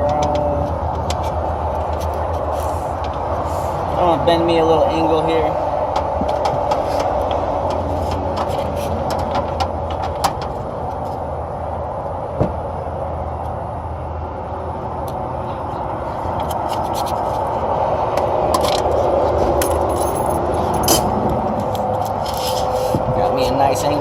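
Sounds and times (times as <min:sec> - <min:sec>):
steady mechanical drone: 0:00.0 - 0:24.0
tube bender clicks and scrapes: 0:16.3 - 0:17.5.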